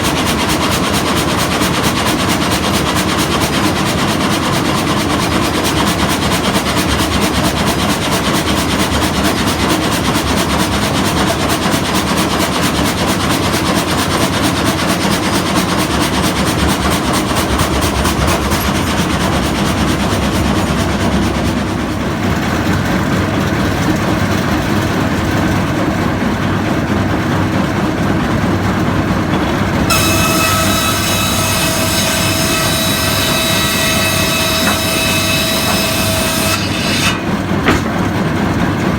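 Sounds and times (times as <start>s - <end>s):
sawmill mechanical clatter: 0.0s - 38.9s.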